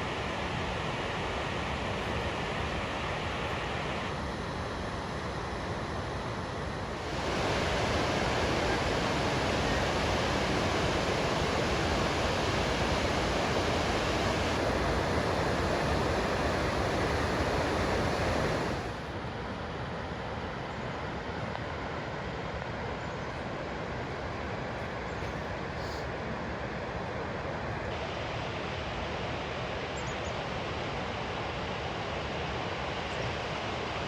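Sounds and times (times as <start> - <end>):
waterfall rushing: 6.9 - 19.0.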